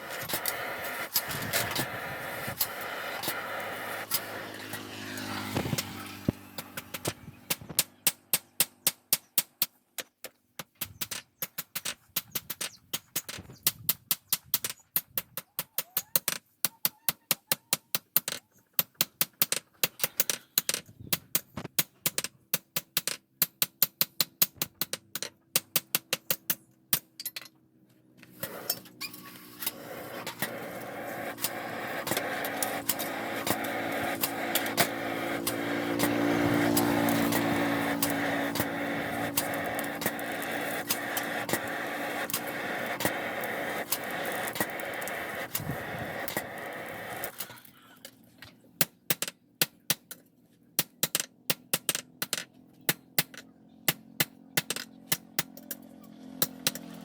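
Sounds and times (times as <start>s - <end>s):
machine hum: 29.4s - 47.3s.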